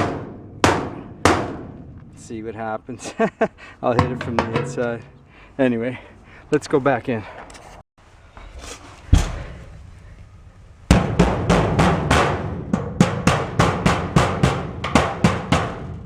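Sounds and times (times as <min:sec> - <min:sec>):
hammer ringing on sheet metal: 0:00.0 - 0:01.7, 0:04.0 - 0:05.3, 0:10.9 - 0:15.8.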